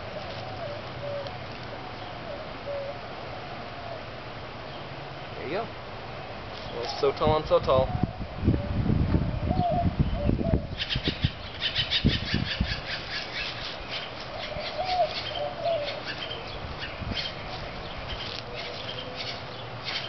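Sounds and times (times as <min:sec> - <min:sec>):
low rumbling gusts: 0:07.3 - 0:12.9.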